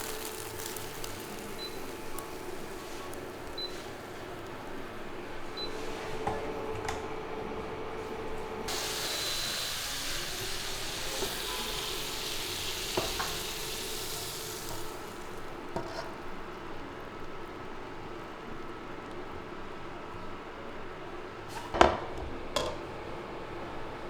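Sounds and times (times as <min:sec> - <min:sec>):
food sizzling in hot oil: 0:00.0 - 0:05.9, 0:08.7 - 0:16.4.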